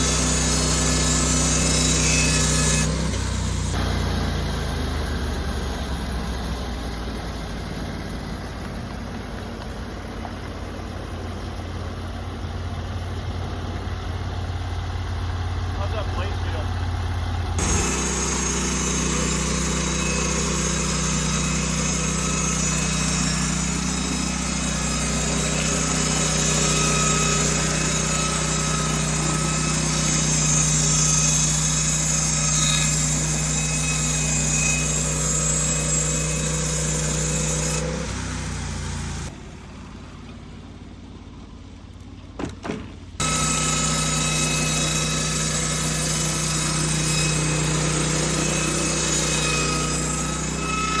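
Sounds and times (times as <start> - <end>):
saw cutting through wood: 0.0 - 8.3, 15.7 - 16.8, 17.4 - 39.5, 43.2 - 51.0
sawmill engine running under load: 0.0 - 51.0.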